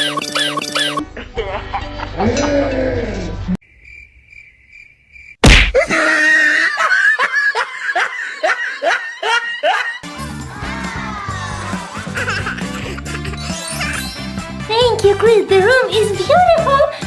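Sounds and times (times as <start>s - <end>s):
faint pulsing chirp: 0.0s - 1.0s
high-pitched laughing: 0.0s - 1.4s
music: 0.0s - 3.3s, 10.0s - 17.0s
loud cartoon smack: 5.4s - 5.8s.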